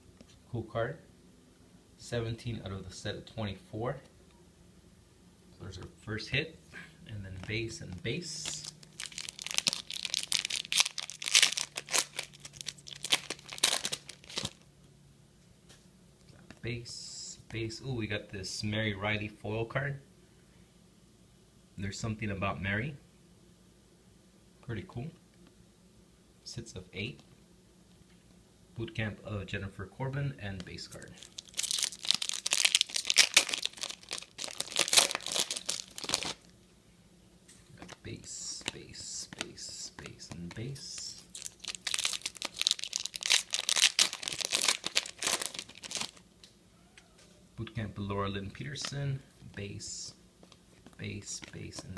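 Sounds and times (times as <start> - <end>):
plastic wrapper tearing and crinkling: 8.4 - 14.6, 30.9 - 36.5, 40.5 - 46.3.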